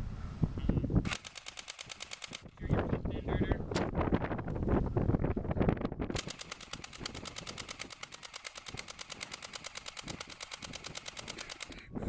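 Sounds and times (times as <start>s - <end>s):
airsoft rifle full auto rattle: 1.0s - 2.6s, 6.1s - 11.9s.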